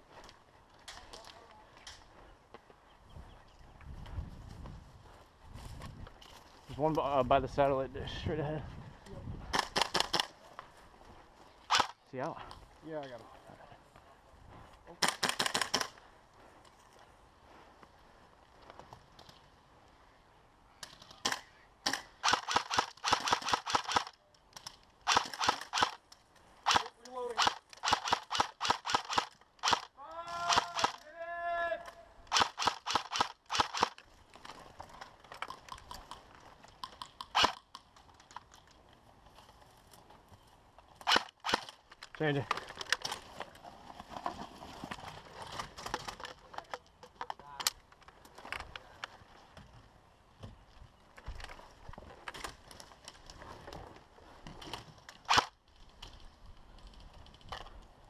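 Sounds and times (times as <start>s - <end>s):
clicks and rustles of gear: 0.1s - 2.8s, 31.8s - 49.6s, 50.7s - 58.0s
airsoft guns firing: 9.5s - 10.3s, 15.0s - 16.0s, 21.2s - 24.1s, 25.1s - 26.0s, 26.6s - 31.0s, 32.3s - 34.0s
person shouting: 30.0s - 32.1s.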